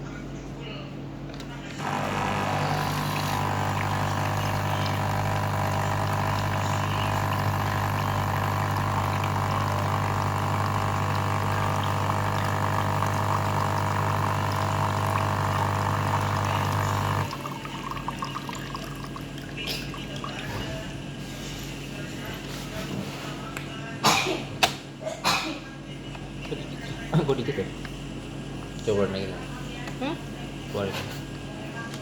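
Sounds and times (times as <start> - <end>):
water pouring into container: 1.8 - 20.8
water pump humming: 1.8 - 21.0.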